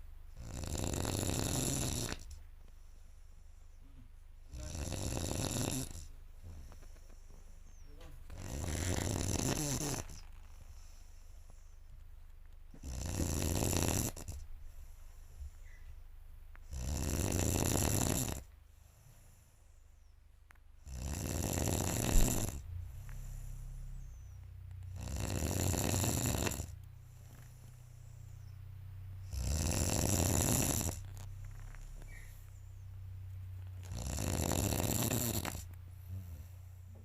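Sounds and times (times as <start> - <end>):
quiet breathing: 0.0 - 37.0
heavy loud snoring: 0.4 - 2.4, 4.4 - 6.7, 8.3 - 10.3, 12.8 - 14.4, 16.7 - 18.5, 20.8 - 28.2, 29.2 - 32.4, 33.8 - 37.0.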